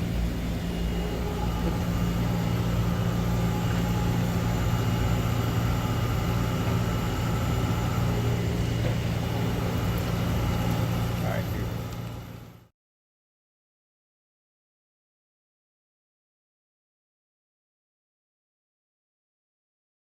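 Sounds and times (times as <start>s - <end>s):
machine low hum: 0.0s - 12.7s.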